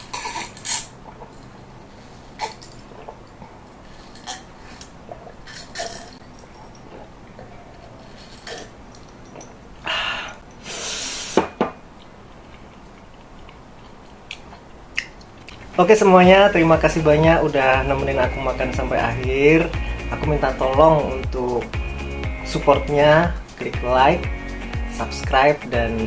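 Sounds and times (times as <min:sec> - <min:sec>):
glass and dishes clinking: 0:05.4 - 0:09.6.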